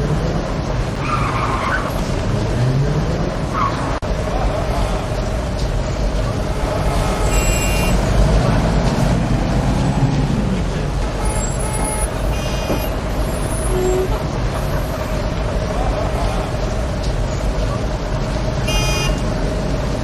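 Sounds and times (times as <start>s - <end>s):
heavy street traffic: 0.0s - 20.0s
large vehicle engine rumbling: 0.0s - 20.0s
high-pitched squeals: 6.3s - 8.6s.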